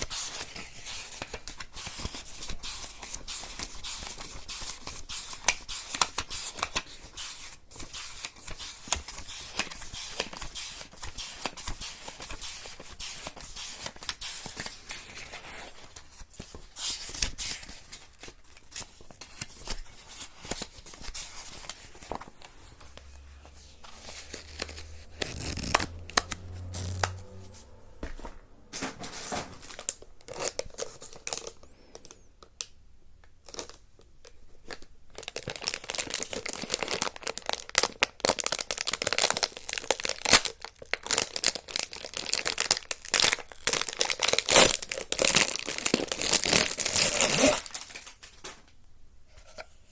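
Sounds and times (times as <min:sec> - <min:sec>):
crinkling and crackling: 0:14.6 - 0:48.8
brief low hum: 0:23.0 - 0:29.5.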